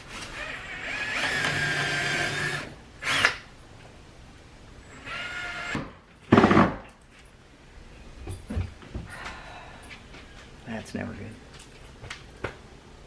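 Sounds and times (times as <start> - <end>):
power drill driving a screw: 0.4 - 3.4, 4.9 - 5.8.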